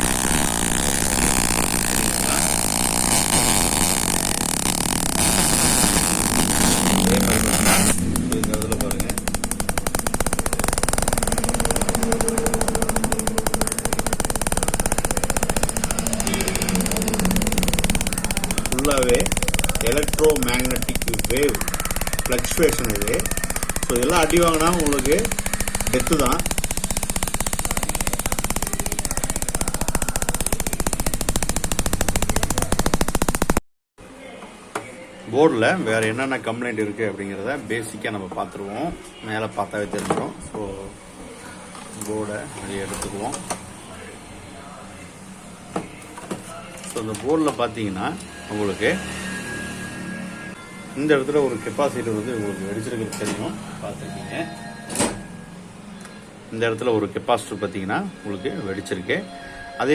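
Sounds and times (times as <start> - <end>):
electrical arcing crackle and sparks: 0.0 - 33.6.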